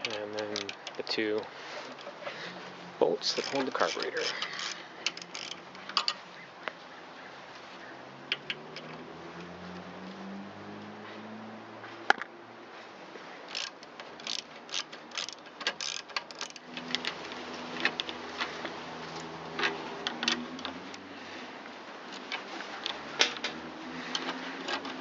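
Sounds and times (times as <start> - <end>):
hand ratchet clicking: 3.3 - 6.2, 13.5 - 19.3.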